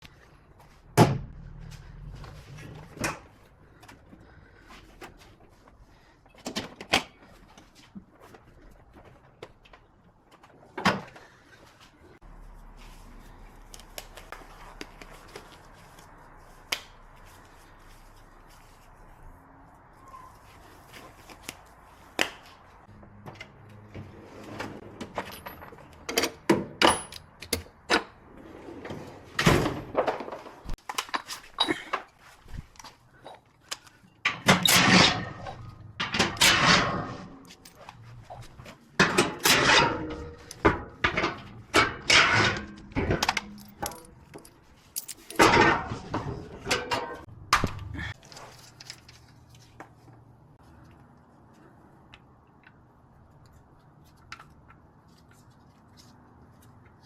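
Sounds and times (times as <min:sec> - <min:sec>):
parts rattling: 0:32.8 - 0:49.8
tools knocking and clanking: 0:39.0 - 0:47.9.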